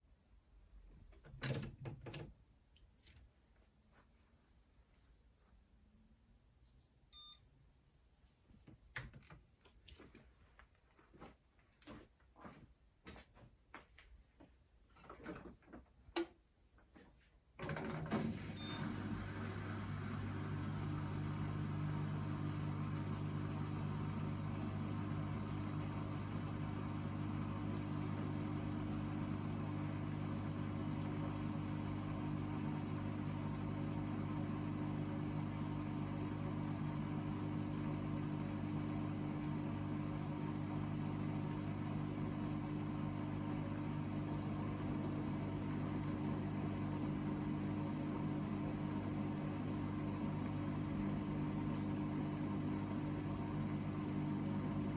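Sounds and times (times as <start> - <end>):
washing machine drum motor humming: 17.6 - 54.9.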